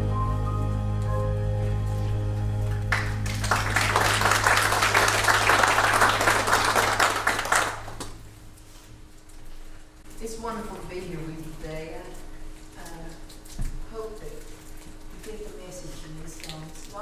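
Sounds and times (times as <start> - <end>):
gospel accompaniment chord: 0.0 - 8.1
congregation applauding: 2.6 - 8.3.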